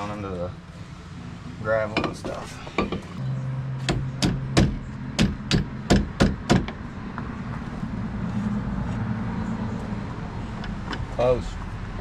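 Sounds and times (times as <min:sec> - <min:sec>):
sharp knocks: 0:03.8 - 0:06.8.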